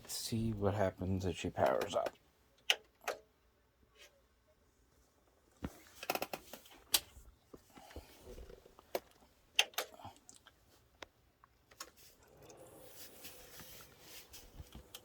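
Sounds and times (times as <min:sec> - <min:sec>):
sharp clicks and light knocks: 0:01.6 - 0:03.3.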